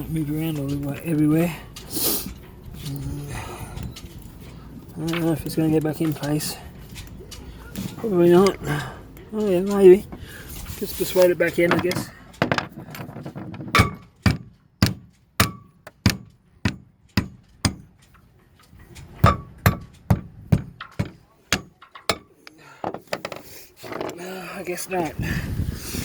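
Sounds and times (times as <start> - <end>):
hammer blows on metal: 13.8 - 17.9, 19.2 - 22.3.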